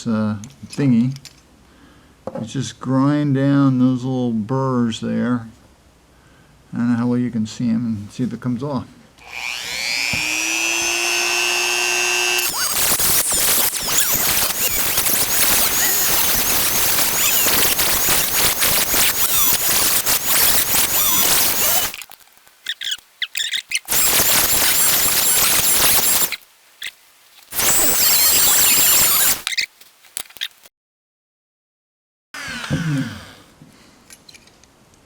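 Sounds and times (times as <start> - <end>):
cutting wheel grinding metal: 9.2 - 22.0, 23.8 - 26.4, 27.6 - 29.4
rotary tool whining: 9.2 - 22.1, 22.7 - 26.4, 27.5 - 29.6.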